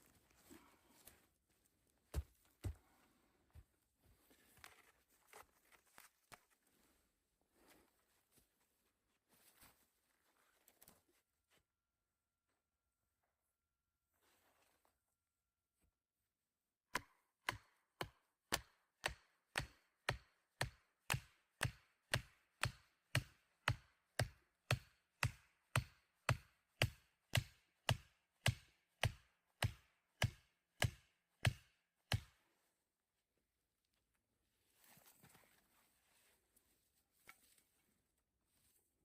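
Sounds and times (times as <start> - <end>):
axe chopping wood: 16.9 - 32.4.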